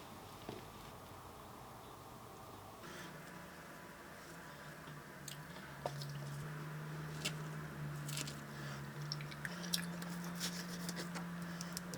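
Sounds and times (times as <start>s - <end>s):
salad leaves crunching and squishing: 7.1s - 10.3s.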